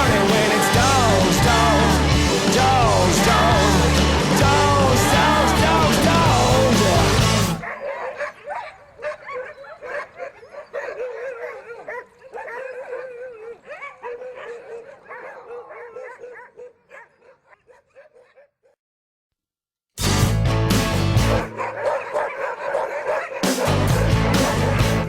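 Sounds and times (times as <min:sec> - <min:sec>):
sled dogs yelping and barking: 0:07.6 - 0:18.8, 0:21.3 - 0:25.0.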